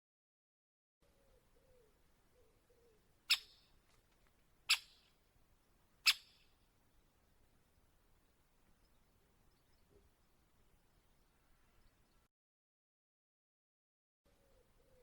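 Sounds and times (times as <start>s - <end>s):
woodpecker sharp kik calls: 1.3s - 3.8s, 4.6s - 5.2s, 6.0s - 6.6s.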